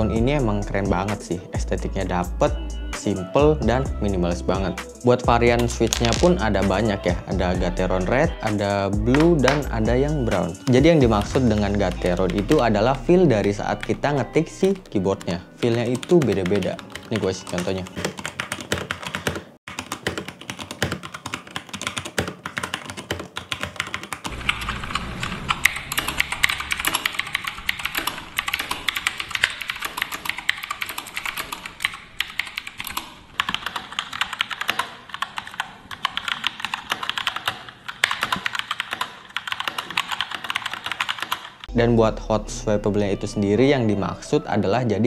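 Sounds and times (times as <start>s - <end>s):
mechanical keyboard typing: 14.6s - 41.7s.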